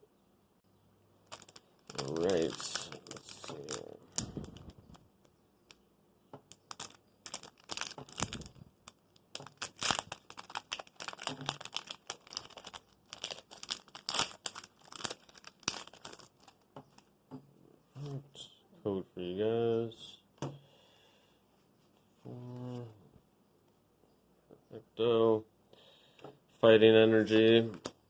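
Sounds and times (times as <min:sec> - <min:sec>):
foil wrapper crinkling and tearing: 0:01.2 - 0:05.0, 0:06.5 - 0:17.1.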